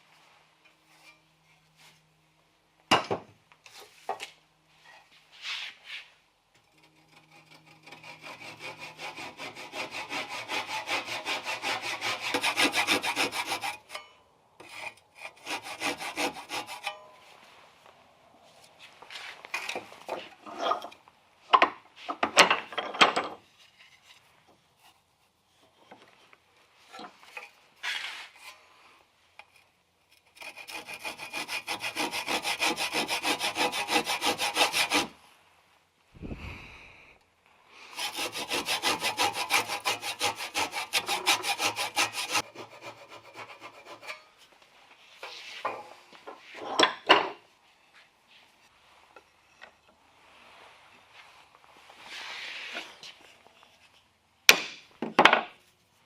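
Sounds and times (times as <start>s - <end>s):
hand saw cutting wood: 6.6s - 14.0s, 14.6s - 17.0s, 30.2s - 35.2s, 37.9s - 44.4s.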